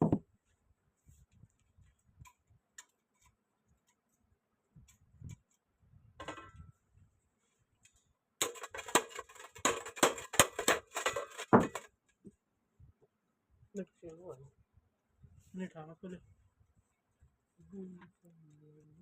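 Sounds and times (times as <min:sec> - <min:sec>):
hard fan parts clattering: 0:06.2 - 0:06.7, 0:08.4 - 0:12.0.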